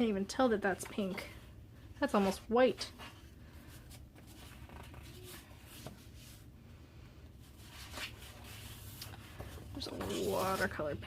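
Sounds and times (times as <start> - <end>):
cardstock sheets rustling: 2.0 - 6.4, 7.5 - 11.0.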